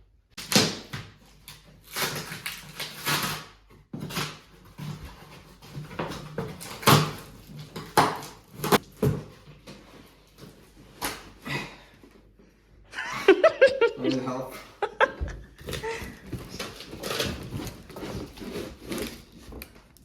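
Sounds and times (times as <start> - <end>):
cardboard ripping and rustling: 0.4 - 11.6, 15.6 - 20.0.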